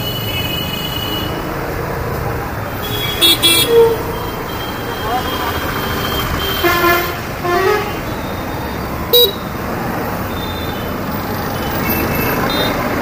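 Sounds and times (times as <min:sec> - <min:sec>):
scooter engine and road noise: 0:00.0 - 0:13.0
loud horn toot: 0:02.7 - 0:08.4
faint vehicle horns: 0:02.7 - 0:09.4, 0:10.3 - 0:12.9.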